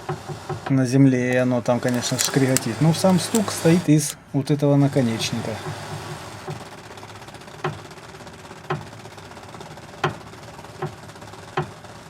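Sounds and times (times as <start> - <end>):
steering joints knocking: 0.0 - 3.9.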